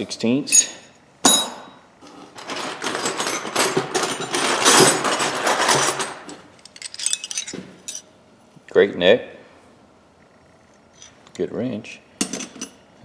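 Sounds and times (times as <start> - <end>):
metal wrenches clattering: 0.6 - 8.1.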